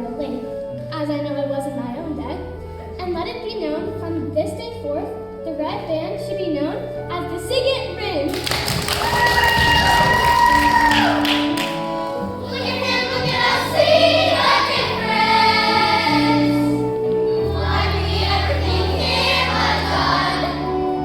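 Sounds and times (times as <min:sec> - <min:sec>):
instrumental accompaniment: 0:08.3 - 0:21.0
group singing: 0:12.4 - 0:16.8, 0:17.4 - 0:20.7.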